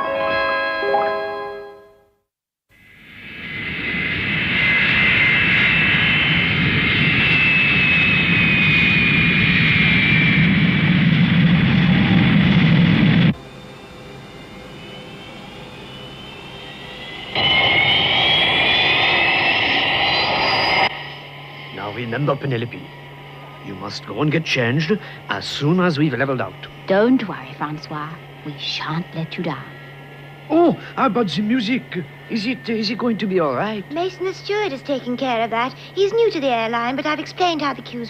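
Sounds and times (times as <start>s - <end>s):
jet airliner engines whining: 2.8s - 38.0s.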